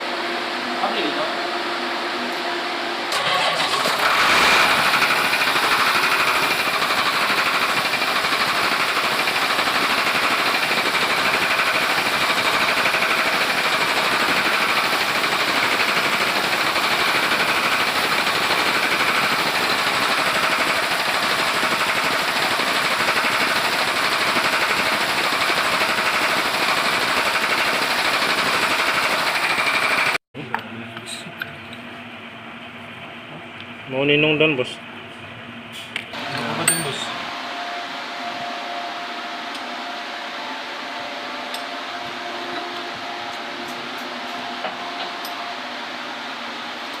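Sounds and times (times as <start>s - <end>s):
diesel engine clattering: 3.1s - 26.8s.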